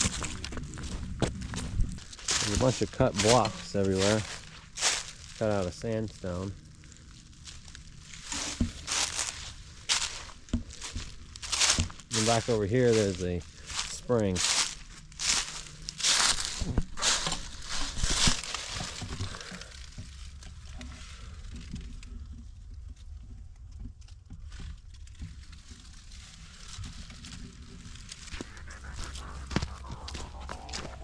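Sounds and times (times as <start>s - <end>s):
footsteps through leaf litter: 0.0s - 20.3s, 25.2s - 31.0s.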